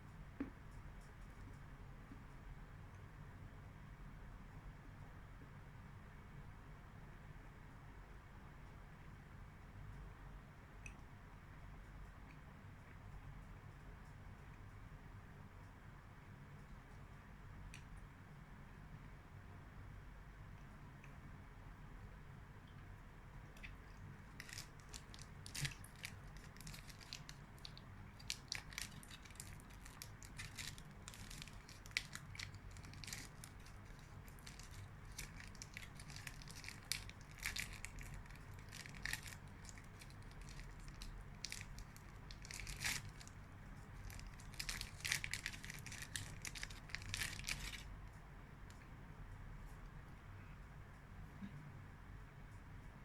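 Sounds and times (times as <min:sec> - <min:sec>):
faint low hum: 0:00.0 - 0:53.0
chocolate crunching and chewing: 0:23.6 - 0:47.9
wrapper crinkling: 0:24.3 - 0:43.4, 0:44.0 - 0:47.9.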